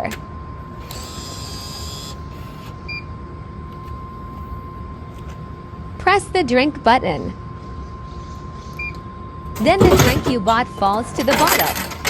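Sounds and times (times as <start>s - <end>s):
low machine hum: 0.0s - 12.0s
coin mechanism whirring and rattling: 9.6s - 12.0s.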